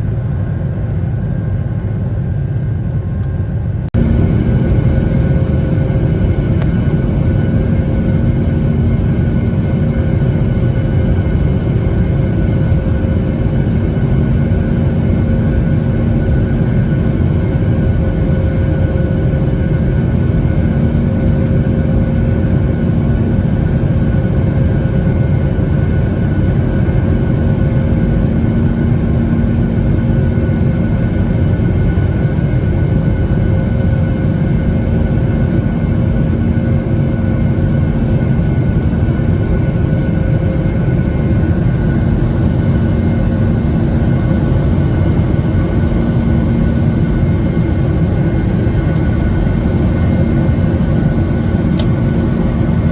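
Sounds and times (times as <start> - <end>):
airliner cabin engine roar: 0.0 - 52.9.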